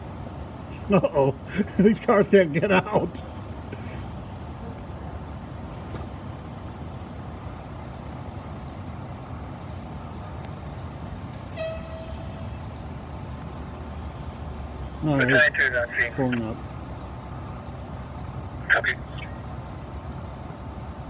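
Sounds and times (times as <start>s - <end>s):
idling vehicle engines rumble: 0.0s - 21.0s
vehicle horn: 11.5s - 12.6s.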